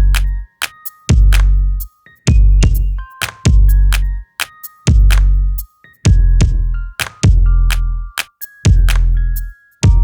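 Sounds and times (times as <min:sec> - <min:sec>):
heavy sub-bass notes: 0:00.0 - 0:00.4
electronic music with drum-machine beat: 0:00.0 - 0:10.0.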